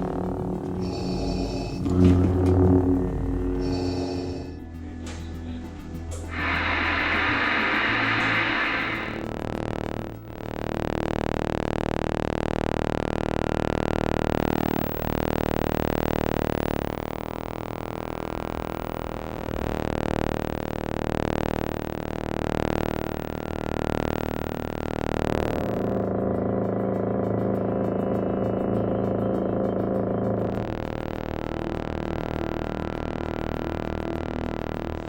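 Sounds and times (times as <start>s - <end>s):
lightsaber electric hum: 0.0s - 35.0s
hiss: 6.3s - 9.2s.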